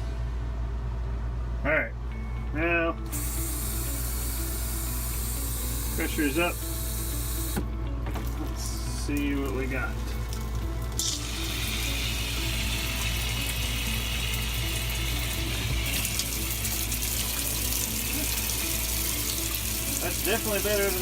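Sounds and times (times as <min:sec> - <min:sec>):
shower head water spraying: 0:03.1 - 0:07.6, 0:10.3 - 0:21.0.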